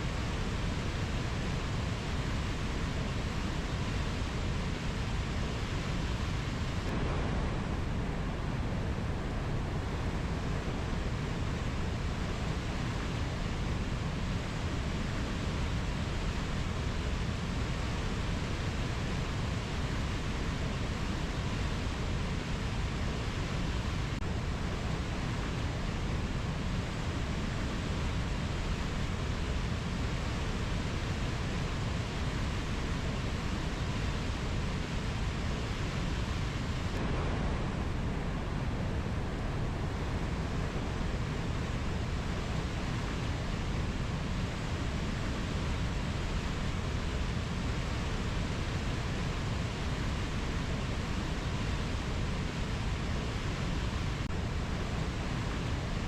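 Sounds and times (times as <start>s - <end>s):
steady rushing nature ambience: 0.0s - 56.0s.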